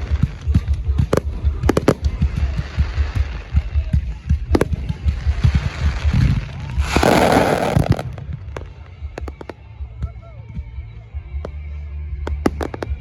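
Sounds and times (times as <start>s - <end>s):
fireworks booming: 0.0s - 9.6s, 12.3s - 13.0s
fireworks cracks: 0.0s - 9.7s, 12.3s - 13.0s.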